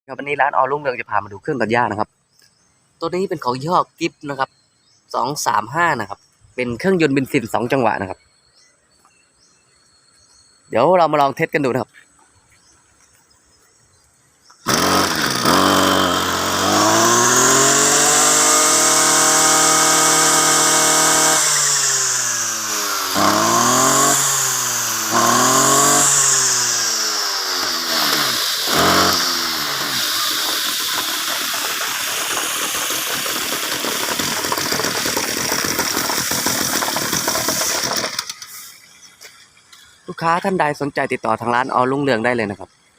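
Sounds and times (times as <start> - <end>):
brush cutter engine revving: 14.6 - 38.9.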